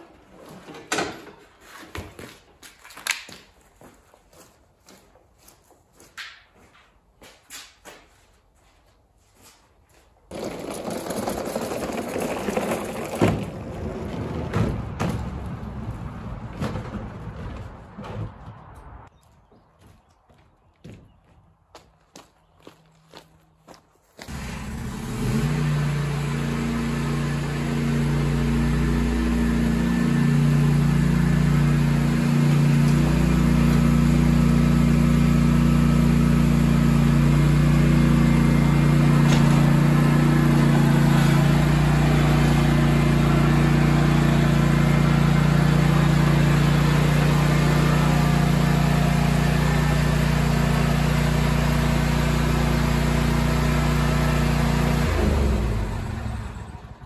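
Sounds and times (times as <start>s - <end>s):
mower engine running: 10.3s - 14.4s, 24.3s - 57.0s.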